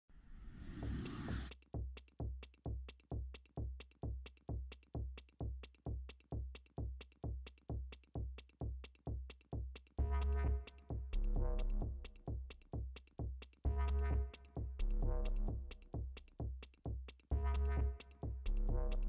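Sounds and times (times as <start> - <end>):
drum machine kick drum: 1.4 - 19.0.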